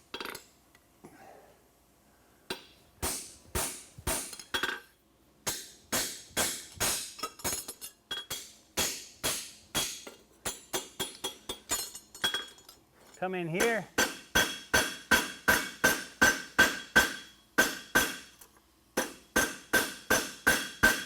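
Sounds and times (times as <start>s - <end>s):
hammer striking horseshoe on anvil: 5.4s - 12.5s, 13.6s - 18.3s, 19.0s - 21.0s.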